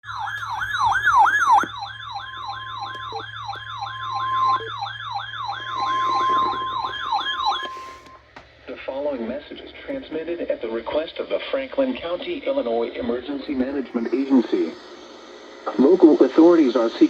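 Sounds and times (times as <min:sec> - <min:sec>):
electronic siren alert tone: 0:00.0 - 0:08.2, 0:12.7 - 0:16.6
faint steady tone: 0:00.0 - 0:17.0.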